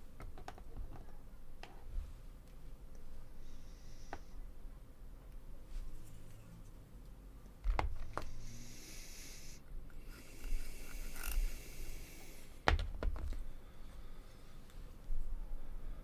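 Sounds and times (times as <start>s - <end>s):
plastic model parts clicking: 10.1s - 11.6s.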